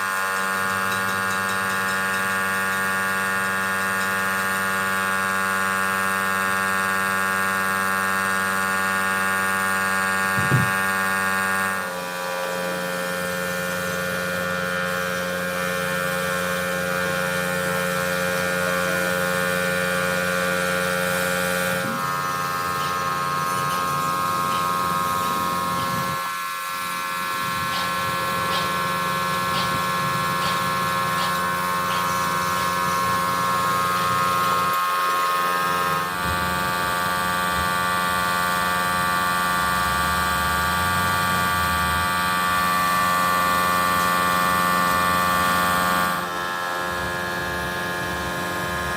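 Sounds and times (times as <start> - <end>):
metalworking machine whining: 0.0 - 48.9
single knock: 10.4 - 10.7.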